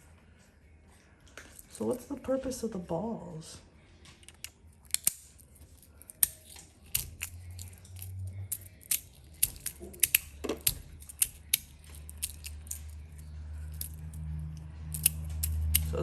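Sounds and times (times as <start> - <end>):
magnetic slider metallic clicks: 4.2 - 5.2, 6.1 - 12.9.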